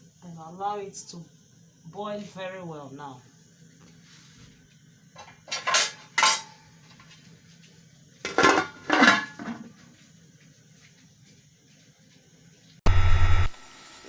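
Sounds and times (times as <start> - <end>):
metal pot and lid clanking: 5.2 - 6.6, 8.3 - 9.6.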